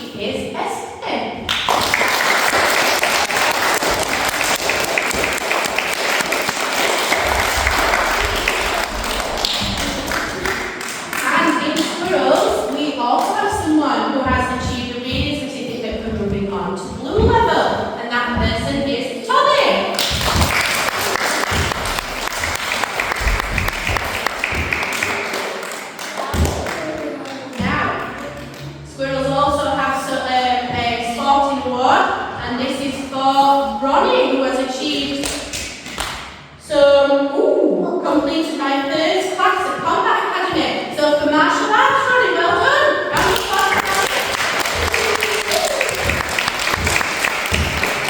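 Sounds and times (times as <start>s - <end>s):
children applauding: 1.7s - 11.3s, 20.0s - 27.5s, 43.2s - 48.0s.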